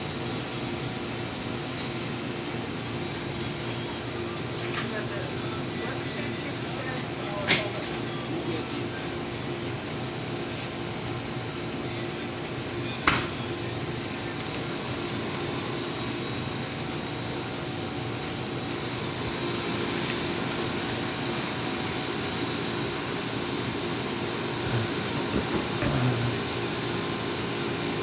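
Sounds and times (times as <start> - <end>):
air handling hum and hiss: 24.5 - 27.6.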